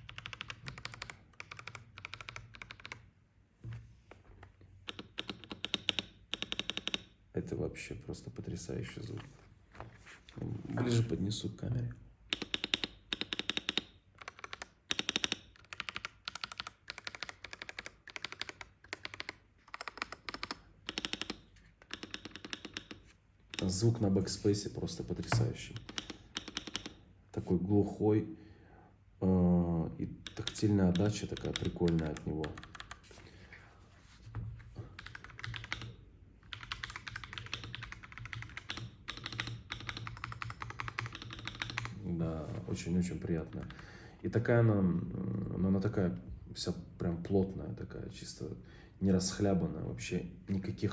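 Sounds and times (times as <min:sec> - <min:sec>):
mechanical keyboard typing: 0:00.0 - 0:03.1, 0:04.8 - 0:07.2, 0:12.3 - 0:24.0, 0:25.2 - 0:27.0, 0:30.2 - 0:33.2, 0:35.0 - 0:42.0.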